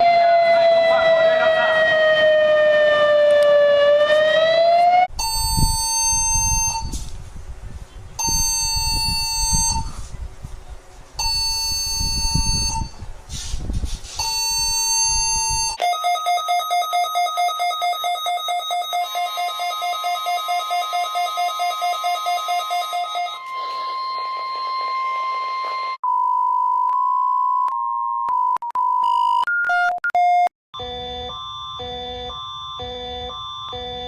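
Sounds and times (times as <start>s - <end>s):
siren-like electronic wail: 0.0s - 7.0s, 17.5s - 26.0s
long alarm beeps: 5.2s - 7.0s, 8.2s - 9.9s, 11.2s - 13.0s, 14.2s - 27.2s, 30.8s - 34.0s.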